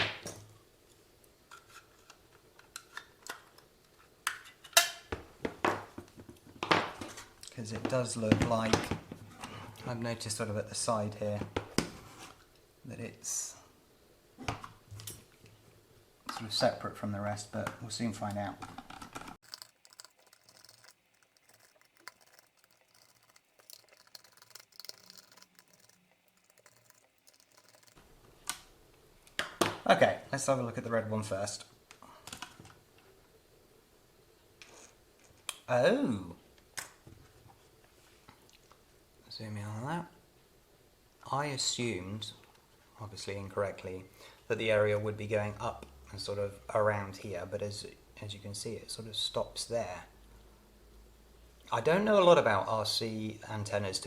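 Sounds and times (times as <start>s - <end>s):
plastic clicks and scratches: 19.4s - 28.0s.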